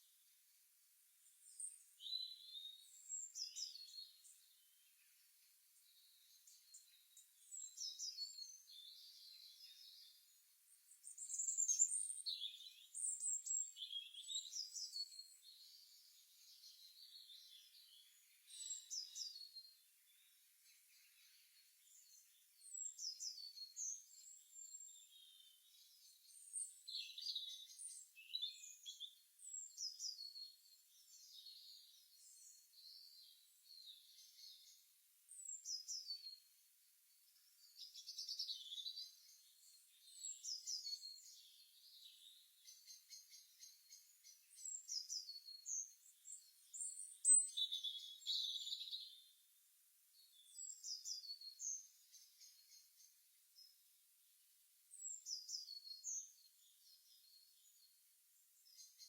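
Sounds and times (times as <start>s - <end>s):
songbirds chirping and singing: 1.2s - 49.4s, 50.2s - 53.9s, 55.0s - 58.0s, 58.6s - 59.0s.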